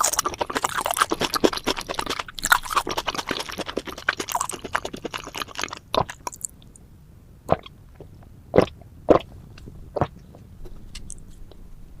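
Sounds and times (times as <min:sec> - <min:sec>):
loud mouth sounds: 0:00.0 - 0:06.6
person chewing: 0:00.0 - 0:06.7.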